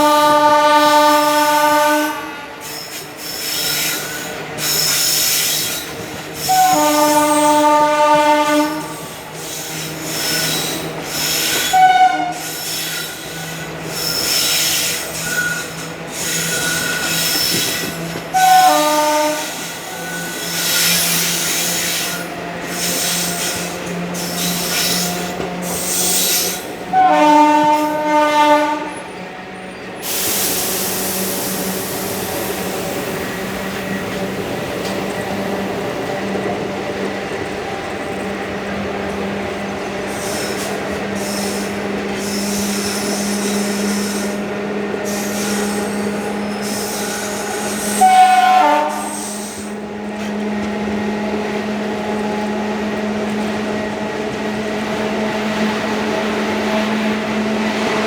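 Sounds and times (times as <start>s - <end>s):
train horn blasts: 0.0s - 2.7s, 6.4s - 9.3s, 11.5s - 12.6s, 16.5s - 20.3s, 25.7s - 29.2s, 45.0s - 50.4s
train wheels clattering: 2.6s - 28.1s.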